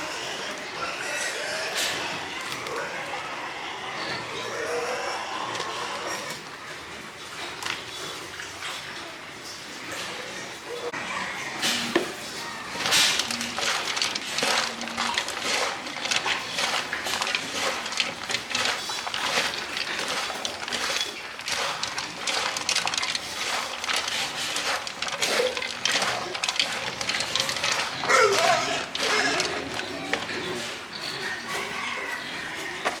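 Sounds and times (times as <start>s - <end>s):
small hard objects clinking: 11.6s - 31.3s.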